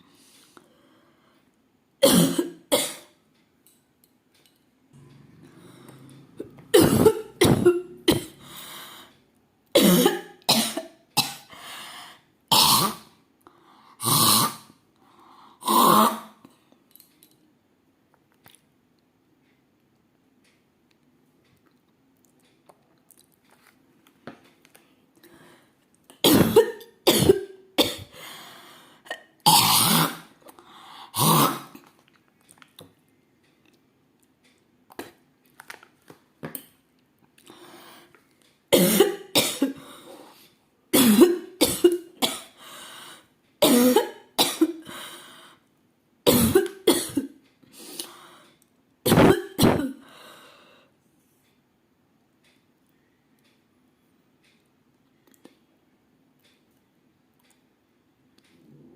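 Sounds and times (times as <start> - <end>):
woman coughing: 2.0 - 3.1, 6.7 - 8.4, 9.8 - 11.5, 26.2 - 28.2, 38.8 - 39.8, 41.0 - 42.6, 43.6 - 44.8, 46.3 - 47.4, 49.1 - 50.0
woman clearing throat: 6.4 - 8.4, 26.3 - 28.1, 49.1 - 50.0.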